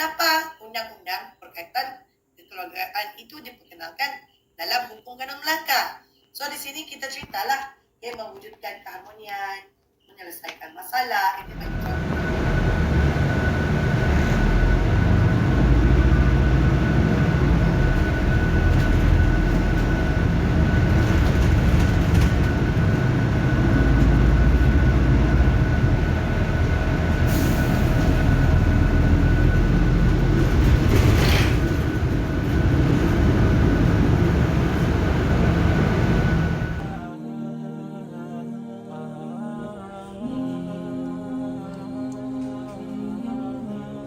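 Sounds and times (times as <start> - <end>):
faint steady whine: 11.4 - 37.1
vehicle rumble: 11.4 - 37.1
short hissing rushes: 27.2 - 28.3.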